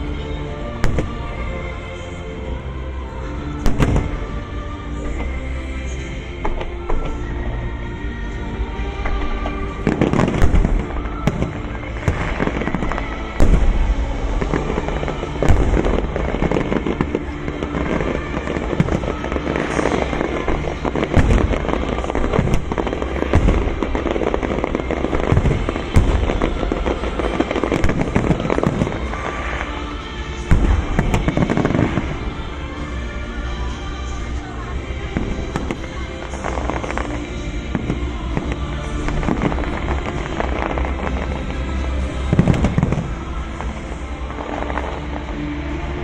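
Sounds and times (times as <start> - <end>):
fireworks bursting and crackling: 0.0 - 46.0
music: 0.0 - 46.0
heavy firework booms: 9.8 - 29.5, 30.5 - 32.3, 42.2 - 43.2.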